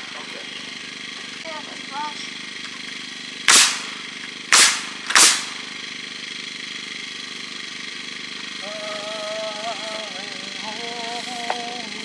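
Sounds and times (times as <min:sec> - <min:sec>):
engine hum: 0:00.0 - 0:12.0
sharp bangs: 0:02.7 - 0:06.5.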